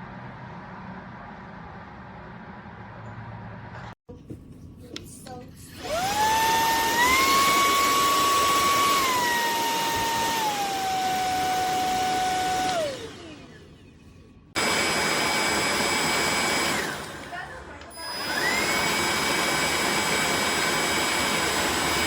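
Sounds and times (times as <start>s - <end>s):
vacuum cleaner motor whine: 5.7s - 22.0s.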